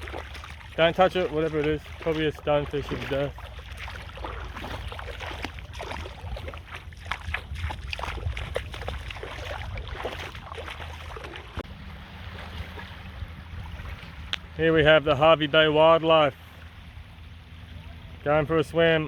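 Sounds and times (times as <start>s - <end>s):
shallow water splashing: 0.0s - 19.0s
wind rumbling on microphone: 0.0s - 19.0s.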